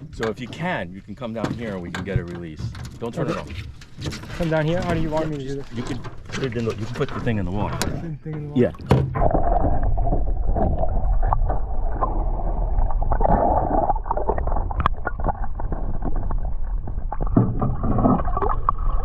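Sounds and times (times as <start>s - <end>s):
water churning and gurgling: 0.0s - 19.0s
small knocks: 1.4s - 5.0s.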